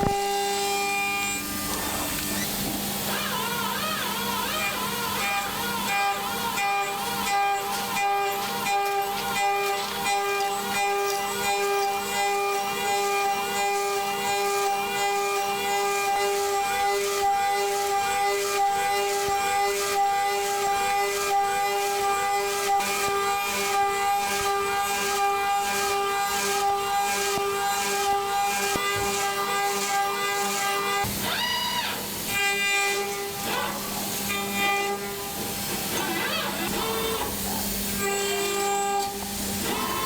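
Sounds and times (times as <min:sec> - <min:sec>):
milling machine cutting whine: 0:00.0 - 0:40.0.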